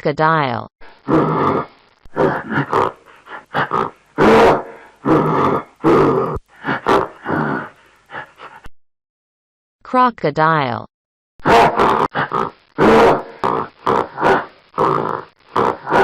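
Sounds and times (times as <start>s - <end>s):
crocodile grunting: 1.0s - 8.6s, 11.5s - 16.0s.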